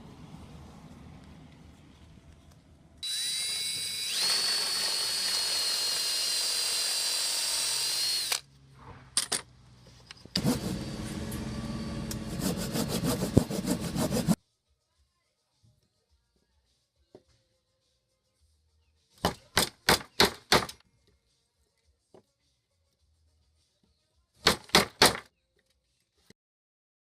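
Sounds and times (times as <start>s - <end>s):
drill clicks: 3.0s - 8.4s
power drill whining: 3.0s - 8.4s.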